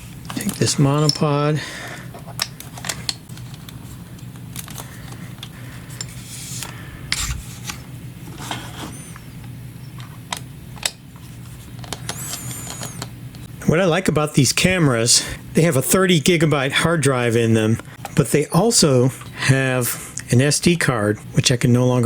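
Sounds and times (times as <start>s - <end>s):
steady low hum: 0.0s - 22.0s.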